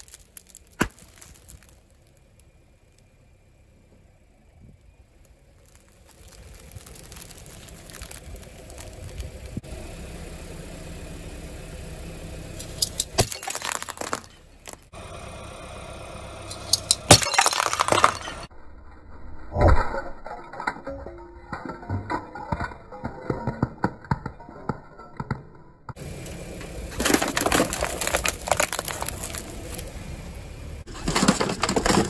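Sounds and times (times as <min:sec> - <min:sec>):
tyre crushing brittle objects: 0:00.0 - 0:02.5, 0:05.5 - 0:09.6, 0:12.6 - 0:14.9, 0:16.5 - 0:18.5, 0:27.0 - 0:29.9, 0:30.9 - 0:32.0
low engine rumble: 0:00.0 - 0:32.0.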